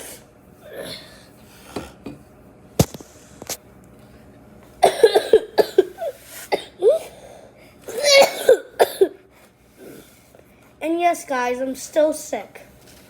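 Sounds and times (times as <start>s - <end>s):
child coughing: 0.7s - 1.2s, 4.8s - 7.3s, 7.9s - 9.2s.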